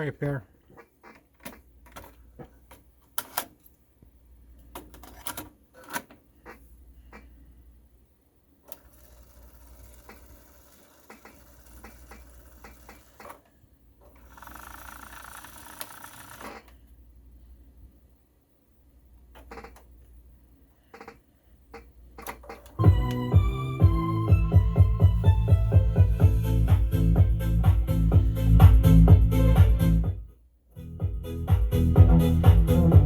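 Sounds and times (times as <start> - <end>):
tape motor whirring: 8.7 - 13.4.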